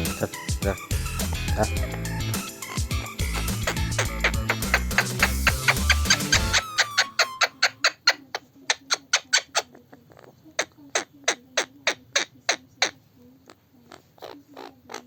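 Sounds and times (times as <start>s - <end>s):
parrot clicking: 0.6s - 9.7s.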